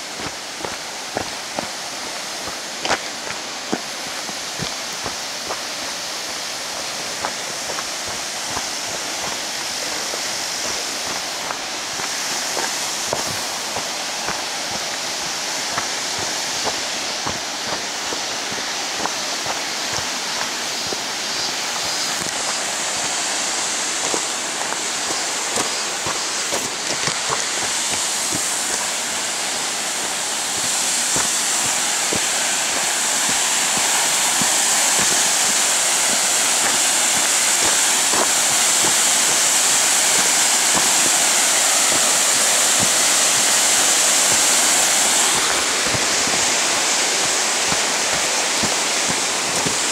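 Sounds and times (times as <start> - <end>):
mountain stream rushing: 0.0 - 49.9.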